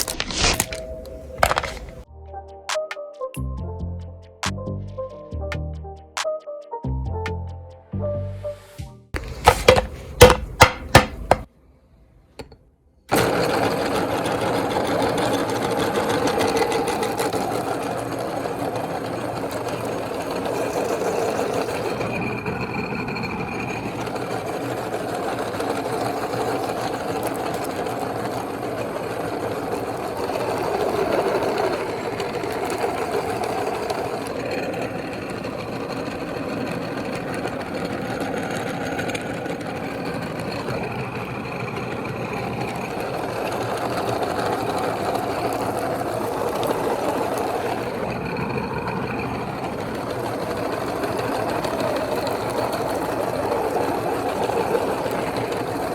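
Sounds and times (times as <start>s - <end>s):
sharp knocking: 9.2s - 11.5s
electric meat grinder running: 13.1s - 55.9s.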